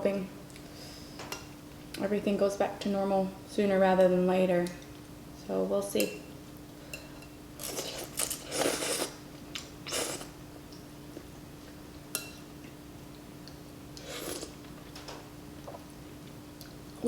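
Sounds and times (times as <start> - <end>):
faint steady hum: 0.0 - 17.0
person chewing noodles: 7.6 - 10.4, 13.4 - 14.6.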